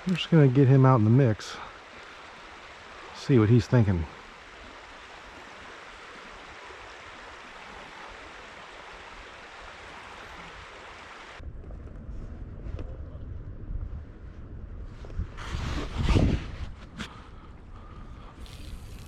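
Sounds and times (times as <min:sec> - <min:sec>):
flowing river water: 0:00.0 - 0:11.4, 0:17.8 - 0:19.0
wind buffeting microphone: 0:11.4 - 0:19.0.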